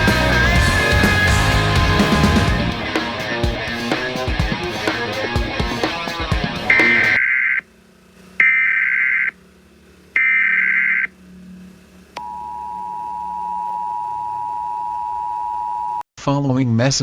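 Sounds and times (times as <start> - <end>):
screeching data bursts: 6.7 - 7.6, 10.2 - 11.1.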